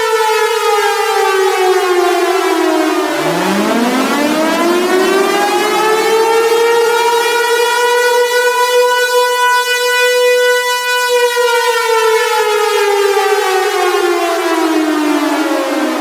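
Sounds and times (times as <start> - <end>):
air raid siren wailing: 3.2 - 7.5.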